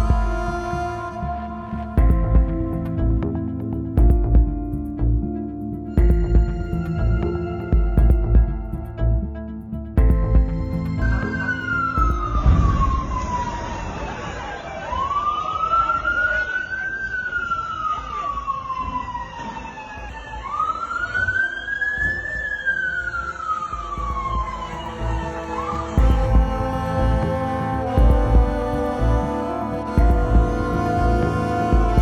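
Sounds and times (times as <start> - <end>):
emergency vehicle siren wailing: 0.0 - 2.0, 11.1 - 32.0
low rumble: 0.0 - 14.7, 24.0 - 32.0.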